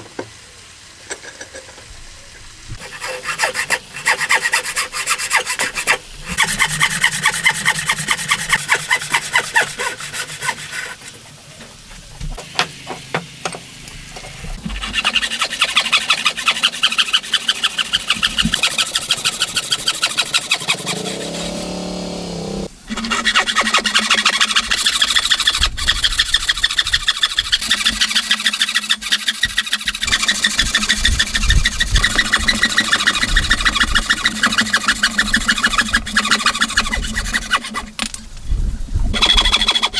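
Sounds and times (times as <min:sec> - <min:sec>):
hand scraping wood: 0:02.8 - 0:11.8, 0:14.6 - 0:38.2
low hum: 0:20.2 - 0:22.8.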